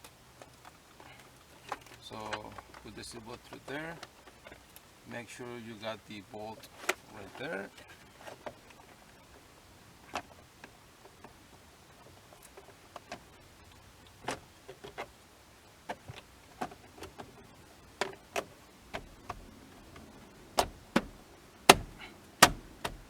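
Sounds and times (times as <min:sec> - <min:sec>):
hand tools clicking and knocking: 0:15.9 - 0:23.0.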